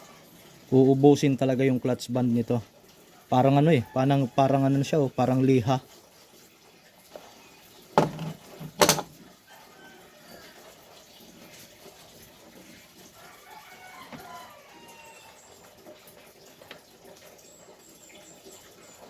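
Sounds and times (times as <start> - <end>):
metal parts clanking: 8.0 - 9.1.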